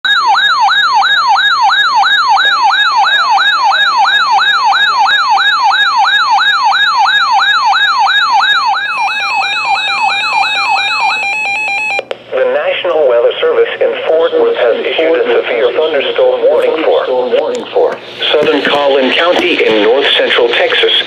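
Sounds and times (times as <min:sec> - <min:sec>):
electronic yelp siren: 0:00.0 - 0:12.1
buzzing electronic tone: 0:08.8 - 0:12.0.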